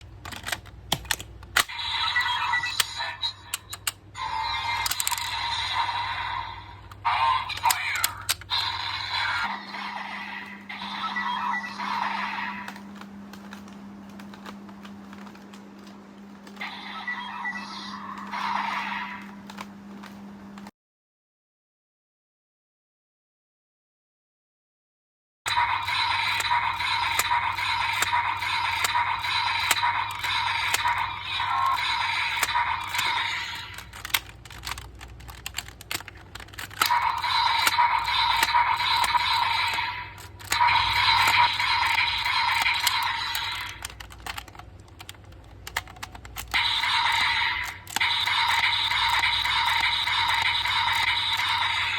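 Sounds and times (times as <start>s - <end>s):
plastic clicks: 0.0s - 1.8s, 2.8s - 4.1s, 4.8s - 5.4s, 6.9s - 8.7s, 26.3s - 51.9s
toy electronic sound effects: 0.3s - 12.8s, 16.6s - 19.3s, 25.5s - 51.9s.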